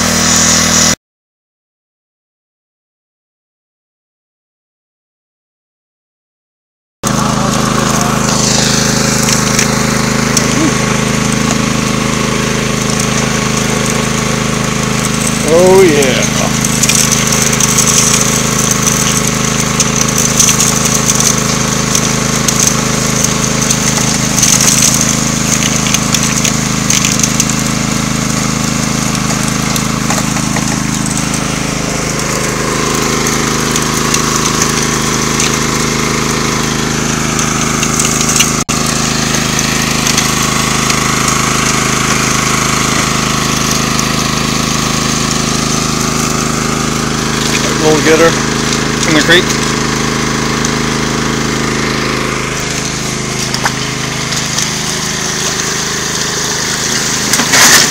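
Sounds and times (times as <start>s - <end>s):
small gas engine running: 0.0s - 1.0s, 7.0s - 57.9s
gravel clinking and rattling: 12.8s - 35.9s, 51.6s - 57.9s.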